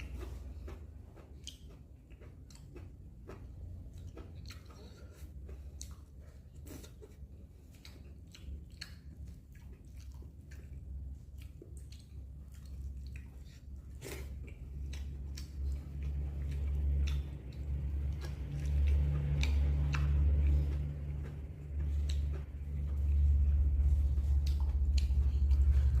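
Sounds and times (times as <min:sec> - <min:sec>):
person chewing and biting: 0:00.0 - 0:26.0
low rumble: 0:07.3 - 0:26.0.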